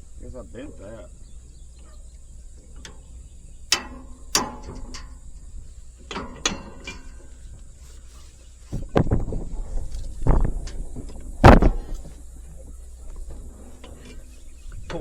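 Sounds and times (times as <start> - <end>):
steady low hum: 0.0 - 15.0
metal clanks with ringing: 3.7 - 7.6.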